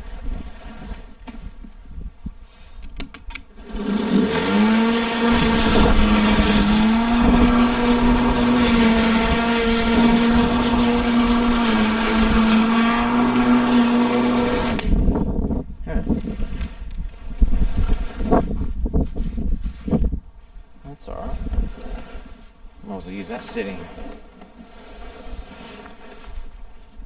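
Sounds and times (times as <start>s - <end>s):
electric lawn mower running: 3.5s - 15.2s.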